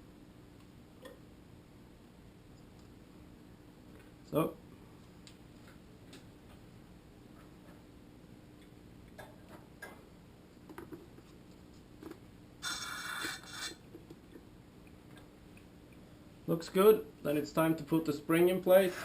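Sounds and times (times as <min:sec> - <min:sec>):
syringe hissing slurp: 0:12.6 - 0:13.8.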